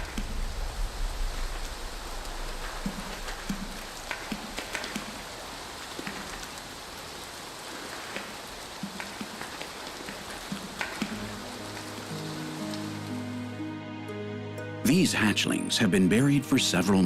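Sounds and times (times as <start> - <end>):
steady rain patter: 0.0 - 13.6.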